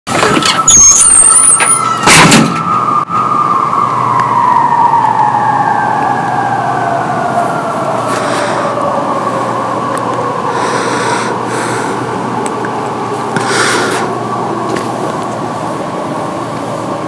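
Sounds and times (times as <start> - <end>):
warning siren falling in pitch: 0.1 - 10.7.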